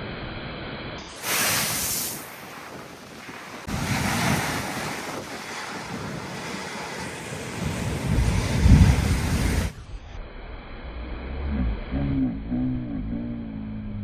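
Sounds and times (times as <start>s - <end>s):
waves breaking: 1.0s - 9.9s
surf crash: 1.0s - 10.0s
wind buffeting microphone: 1.2s - 10.2s.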